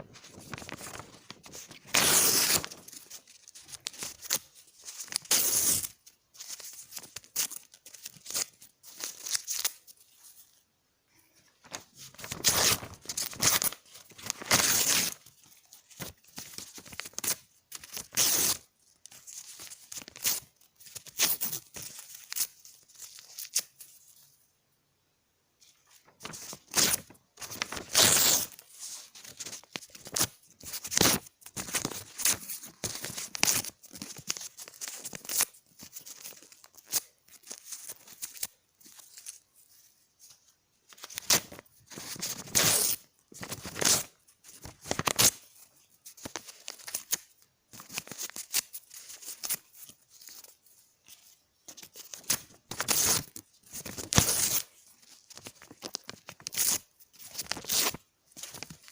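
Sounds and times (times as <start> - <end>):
paper tearing: 1.8 - 3.0, 5.0 - 5.9, 12.1 - 15.2, 16.9 - 18.6, 26.3 - 28.6, 42.2 - 44.1, 52.2 - 54.7.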